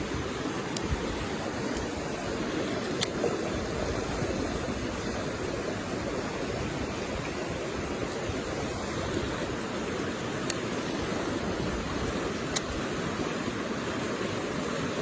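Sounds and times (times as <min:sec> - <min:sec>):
stream rushing: 0:00.0 - 0:15.0
faint sharp clicks: 0:02.9 - 0:03.2, 0:12.5 - 0:12.7.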